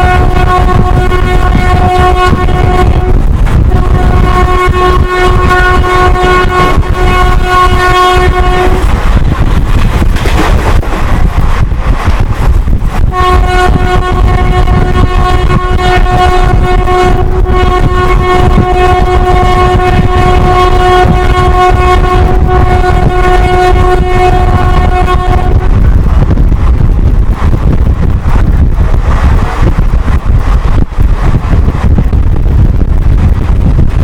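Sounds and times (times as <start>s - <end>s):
locomotive horn blast: 0.0s - 9.4s, 13.0s - 26.0s
train rumbling at speed: 0.0s - 34.0s.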